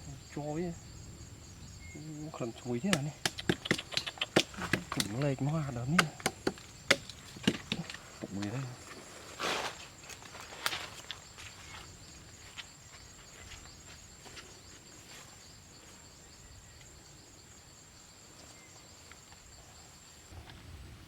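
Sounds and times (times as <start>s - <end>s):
insect high-pitched trill: 0.0s - 20.3s
light clicks and rustles: 7.0s - 11.9s.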